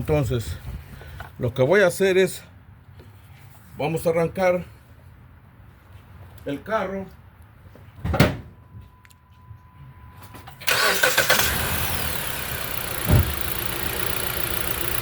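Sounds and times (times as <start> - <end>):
car engine starting and idling: 10.4 - 15.0
thump: 13.0 - 13.4.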